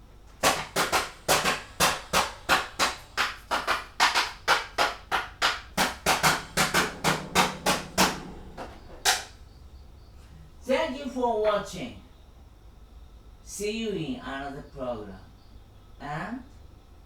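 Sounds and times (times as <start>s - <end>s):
sharp claps: 0.4s - 9.4s.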